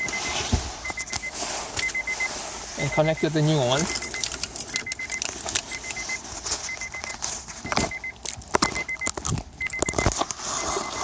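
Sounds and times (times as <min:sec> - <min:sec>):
car warning chime beeping: 0:00.0 - 0:11.0
keys rattling: 0:03.8 - 0:09.8.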